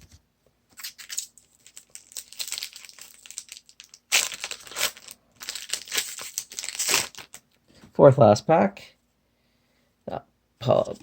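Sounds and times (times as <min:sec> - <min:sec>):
foil wrapper crinkling: 0:00.8 - 0:07.6.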